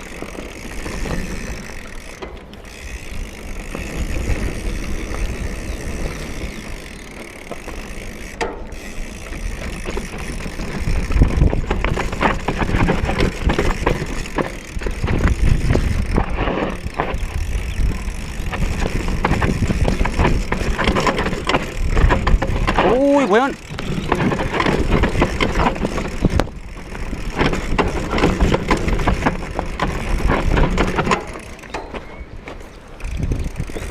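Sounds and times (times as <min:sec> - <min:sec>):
bike chain and frame rattling: 0:00.0 - 0:33.9
bike tyres on dirt: 0:00.0 - 0:33.9
wind on microphone: 0:10.4 - 0:31.1, 0:32.2 - 0:33.9.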